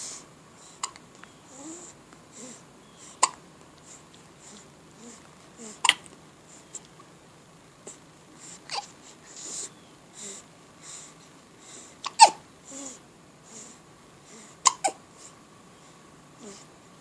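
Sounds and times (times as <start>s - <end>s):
baby breathing softly: 0.0s - 5.9s, 6.5s - 6.9s, 7.8s - 16.8s
baby hiccupping: 3.1s - 3.4s, 5.6s - 6.1s, 8.7s - 8.9s, 12.0s - 12.4s, 14.6s - 15.0s.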